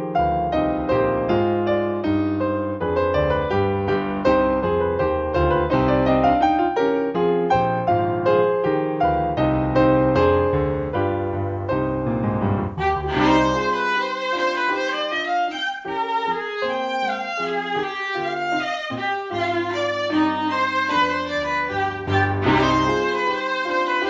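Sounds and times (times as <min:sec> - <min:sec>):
piano playing: 0:00.0 - 0:24.0
violin melody: 0:10.6 - 0:24.0.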